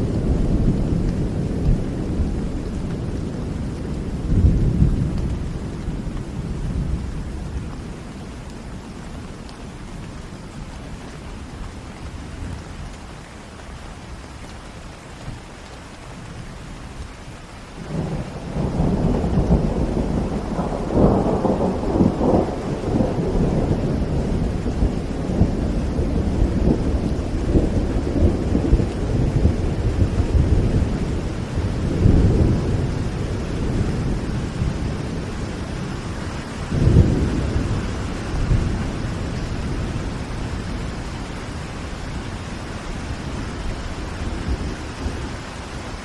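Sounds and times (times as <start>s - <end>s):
thunder rumbling: 0.0s - 8.2s, 17.8s - 46.0s
steady rain: 0.0s - 46.0s.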